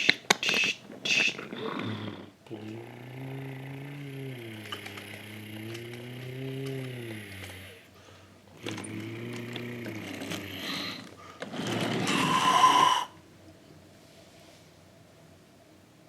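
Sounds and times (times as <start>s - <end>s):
toy vehicle engine sound: 0.0s - 7.9s, 8.6s - 13.2s
clicks: 4.3s - 7.7s
loud noisy burst: 11.6s - 13.1s.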